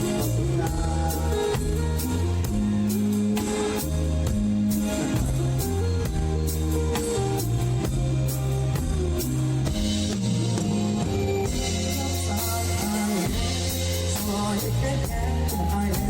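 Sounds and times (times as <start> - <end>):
drum kit beat: 0.0 - 16.0
electric bass: 0.0 - 16.0
electric guitar: 0.0 - 16.0.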